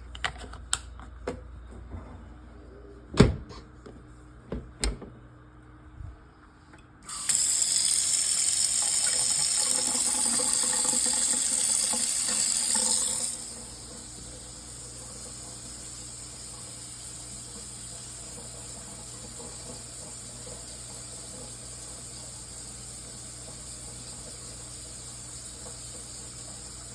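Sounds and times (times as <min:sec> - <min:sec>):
water gushing: 0:07.0 - 0:26.9.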